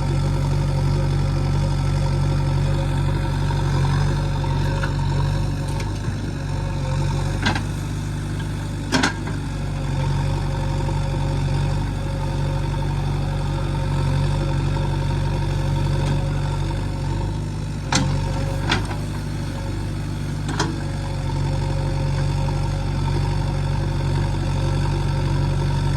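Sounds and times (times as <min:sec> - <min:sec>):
diesel engine running: 0:00.0 - 0:25.9.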